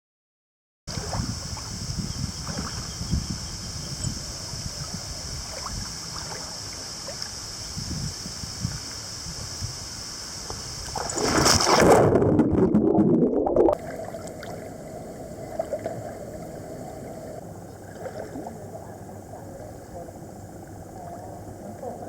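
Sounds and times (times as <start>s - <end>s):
rush of splashing water: 0.9s - 2.9s, 4.7s - 12.7s, 13.6s - 18.8s
water lapping: 4.7s - 7.4s, 13.8s - 22.0s.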